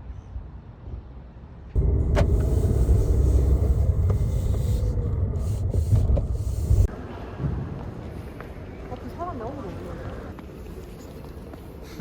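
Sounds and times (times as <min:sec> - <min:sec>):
steady low rumble: 0:01.7 - 0:08.1.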